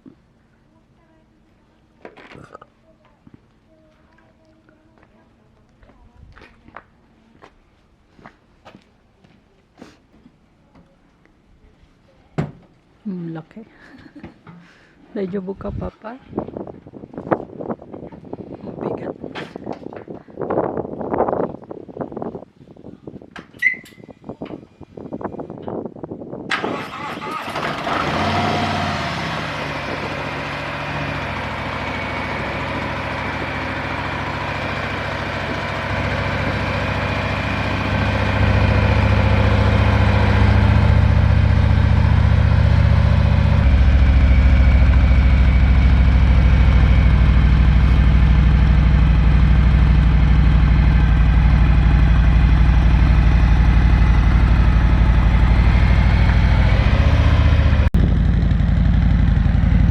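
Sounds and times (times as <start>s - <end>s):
motorcycle engine idling: 29.8s - 59.9s.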